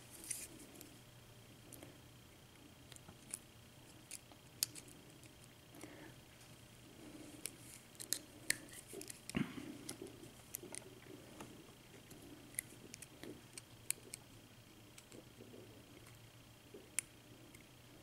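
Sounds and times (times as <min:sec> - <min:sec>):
small metal clicks and scrapes: 0:07.4 - 0:10.8.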